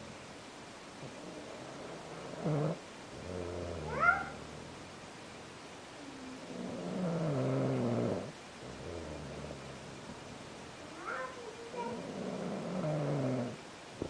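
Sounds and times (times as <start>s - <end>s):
loud snoring: 1.0s - 4.8s, 6.4s - 10.0s, 11.8s - 13.6s.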